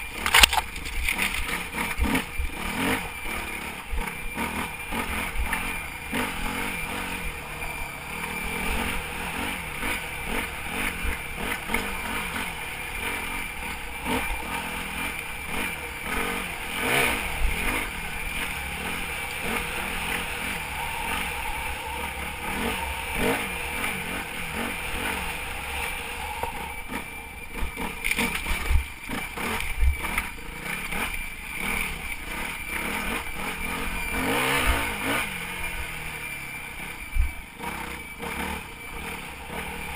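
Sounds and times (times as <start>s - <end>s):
dirt bike engine revving: 0.0s - 39.9s
thin high whistle: 13.0s - 30.4s.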